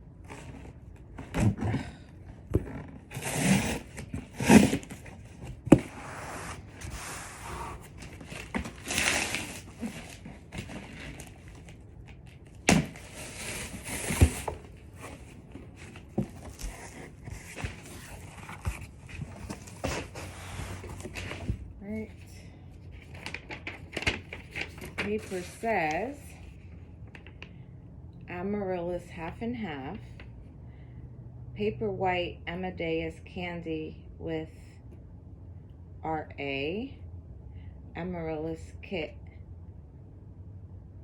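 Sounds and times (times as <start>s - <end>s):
cardboard and paper rustling: 0.2s - 27.4s.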